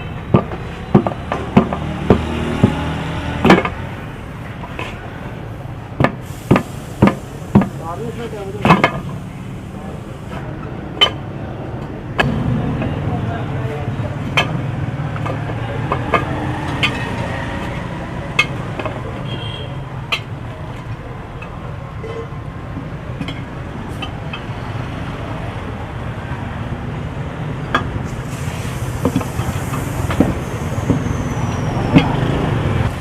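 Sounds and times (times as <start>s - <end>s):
road traffic rumble: 0.0s - 33.0s
tool clicks and knocks: 3.4s - 3.8s.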